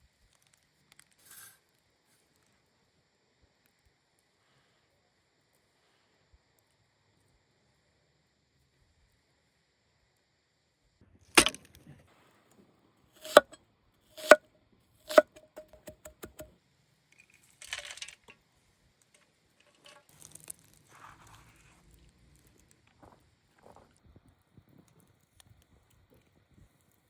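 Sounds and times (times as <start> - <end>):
faint rustling and scraping: 0.9 - 2.4, 17.2 - 25.4.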